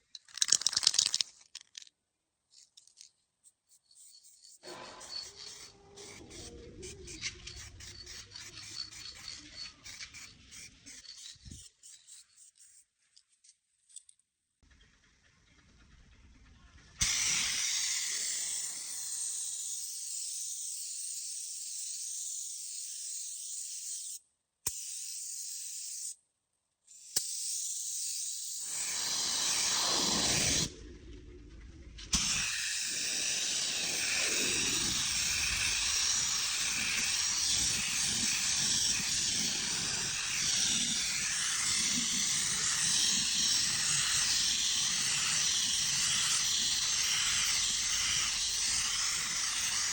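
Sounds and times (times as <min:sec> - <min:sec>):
spray gun hissing: 0:04.0 - 0:12.8, 0:17.0 - 0:22.4, 0:27.0 - 0:30.7, 0:32.1 - 0:49.9
low rumble: 0:30.7 - 0:32.1.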